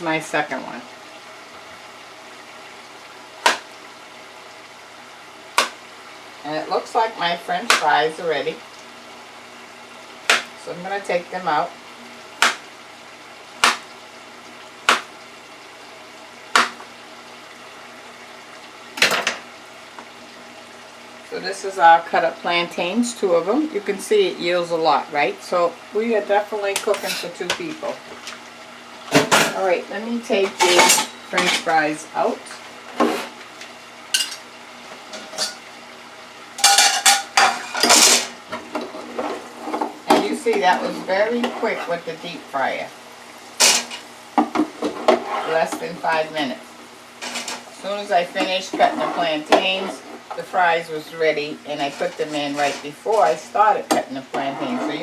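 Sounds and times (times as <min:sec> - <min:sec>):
hot oil bubbling in a fryer: 0:00.0 - 0:55.0
fryer basket metal clanking: 0:29.1 - 0:32.3, 0:34.1 - 0:34.5, 0:35.1 - 0:35.6, 0:36.6 - 0:42.0, 0:43.6 - 0:46.4, 0:51.6 - 0:55.0.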